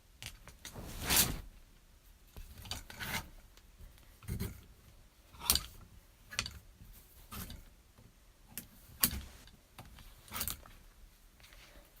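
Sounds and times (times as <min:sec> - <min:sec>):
hangers scraping on a clothes rack: 0:00.7 - 0:01.5.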